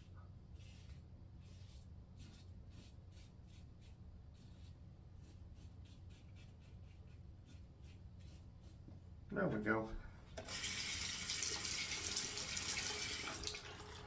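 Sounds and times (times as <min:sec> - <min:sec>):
razor scraping stubble: 0:00.6 - 0:08.8.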